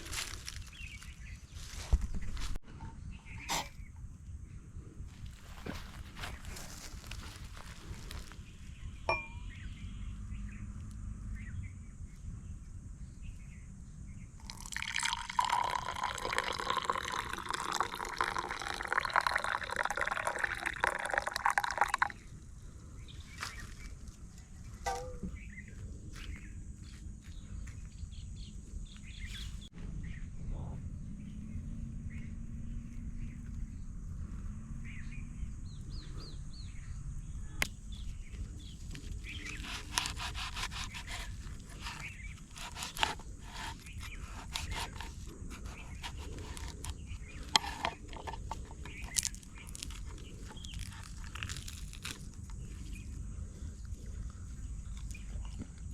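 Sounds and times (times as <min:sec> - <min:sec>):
liquid pouring: 0:14.4 - 0:22.2.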